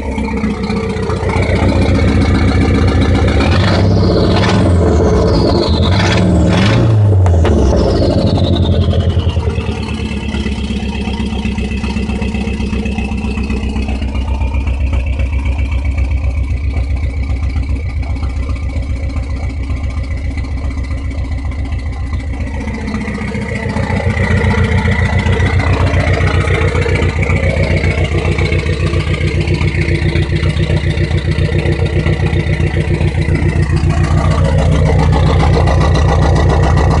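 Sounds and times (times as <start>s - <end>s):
high whine falling in pitch: 0.0s - 15.6s
car engine idling roughly: 0.0s - 37.0s.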